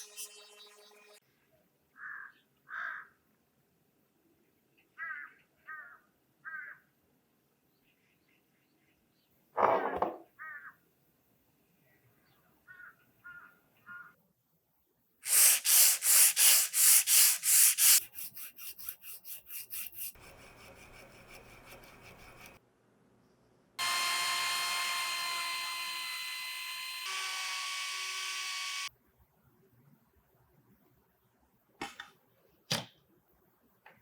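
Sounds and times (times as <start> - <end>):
rhythmic rubbing strokes: 15.3 - 22.6
machine whining: 23.8 - 28.9.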